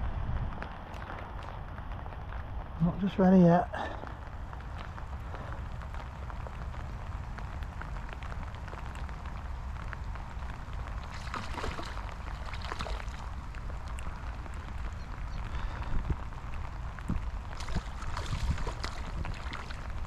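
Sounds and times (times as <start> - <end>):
heavy rain pattering: 0.0 - 20.0
wind rumble on microphone: 0.0 - 20.0
rustles or splashes: 0.6 - 2.7, 7.9 - 20.0.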